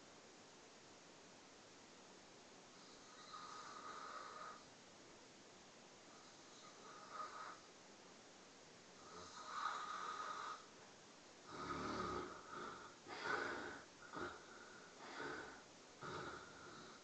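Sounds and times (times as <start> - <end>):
person snoring: 2.8 - 4.6, 6.1 - 7.6, 9.0 - 10.7, 11.4 - 17.0.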